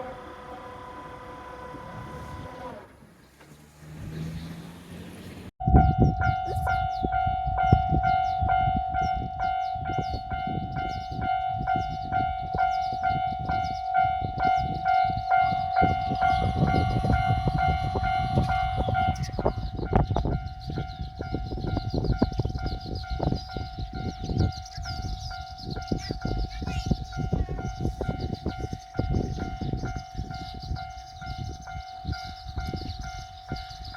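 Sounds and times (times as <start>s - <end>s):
train rumbling past: 0.0s - 33.9s
railroad crossing bell ringing: 5.6s - 33.9s.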